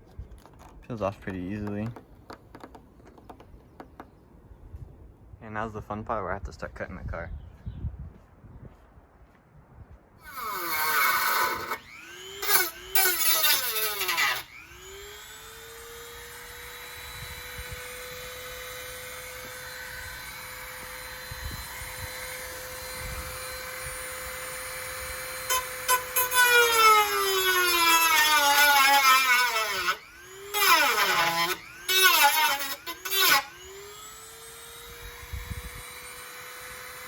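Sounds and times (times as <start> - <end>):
power cutting tool whining: 10.2 - 37.0.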